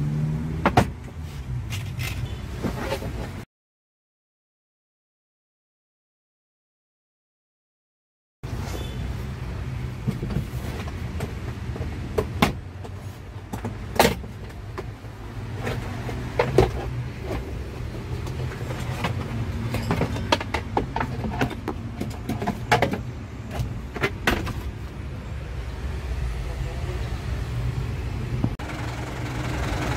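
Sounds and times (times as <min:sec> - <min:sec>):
diesel engine idling: 0:25.5 - 0:29.9.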